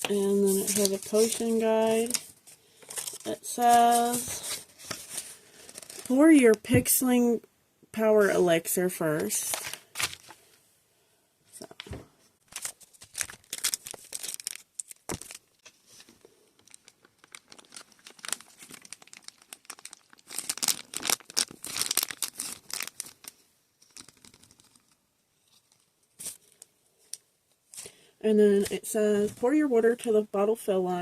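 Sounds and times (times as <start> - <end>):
toy packaging crinkling and tearing: 0.0 - 6.5, 9.2 - 10.4, 12.4 - 27.9.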